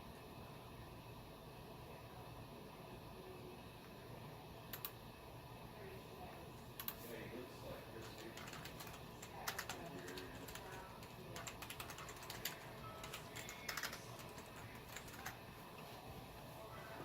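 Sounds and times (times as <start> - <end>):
computer keyboard typing: 4.7 - 5.0, 6.8 - 7.0, 8.0 - 15.4.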